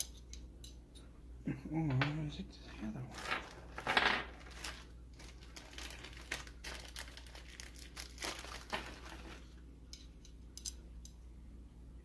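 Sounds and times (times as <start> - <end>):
plastic bag crinkling: 3.1 - 9.6.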